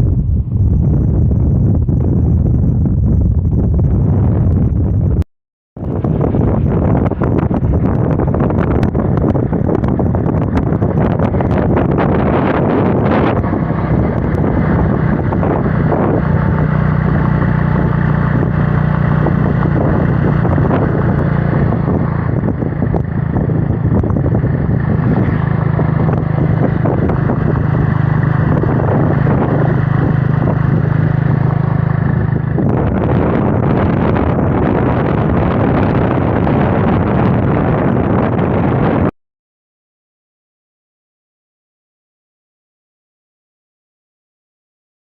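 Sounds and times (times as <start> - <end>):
wind buffeting microphone: 0.0 - 5.2, 5.8 - 39.1
motorcycle engine: 5.8 - 39.1.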